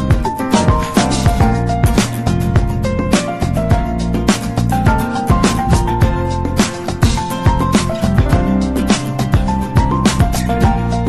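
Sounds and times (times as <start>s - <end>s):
upbeat background music: 0.0s - 11.0s.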